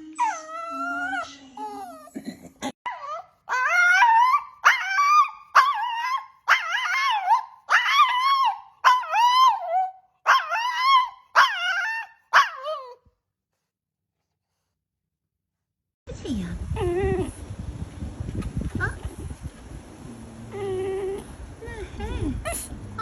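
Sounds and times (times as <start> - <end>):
dog yipping and whining: 0.0 - 2.2, 2.9 - 13.0.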